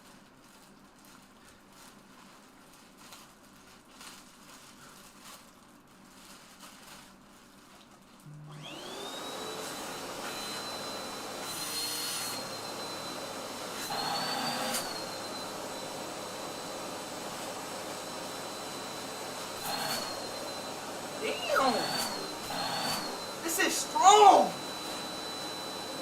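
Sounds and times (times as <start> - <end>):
vacuum cleaner motor whine: 8.3 - 26.0.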